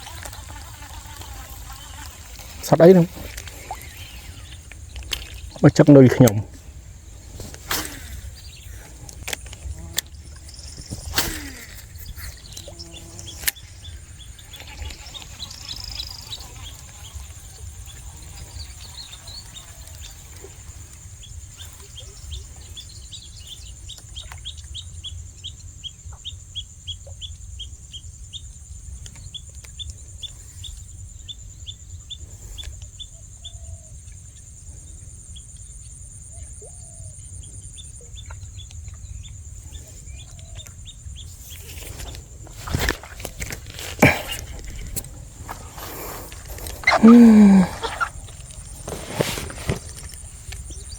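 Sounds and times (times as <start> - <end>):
bird chirping: 7.8 - 20.5, 43.8 - 50.9
high-pitched insect drone: 9.5 - 20.8.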